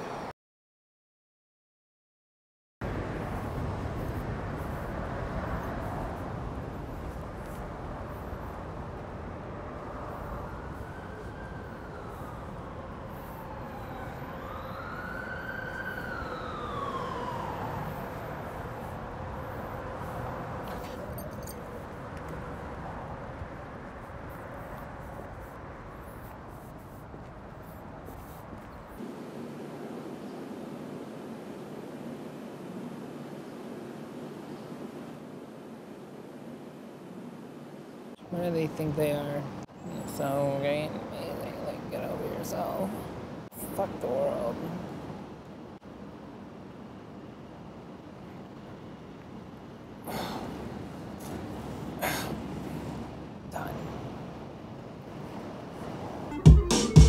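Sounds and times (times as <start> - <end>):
street traffic rumble: 2.8 - 57.0
siren rising and falling: 9.6 - 20.6, 56.3 - 57.0.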